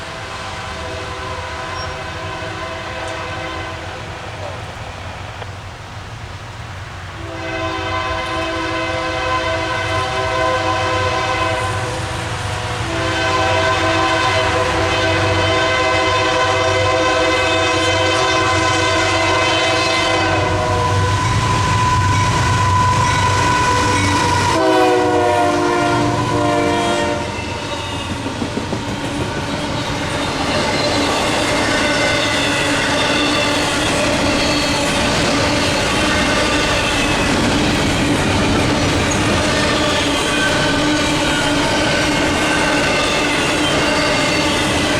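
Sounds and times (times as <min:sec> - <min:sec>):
locomotive air horn blasts: 0:00.0 - 0:04.0, 0:07.2 - 0:28.0
train wheels clickety-clack: 0:20.9 - 0:25.4, 0:26.1 - 0:44.9.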